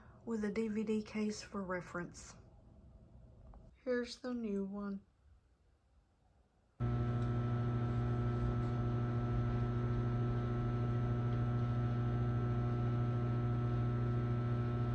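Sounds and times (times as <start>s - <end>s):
microwave oven humming: 6.8s - 14.9s.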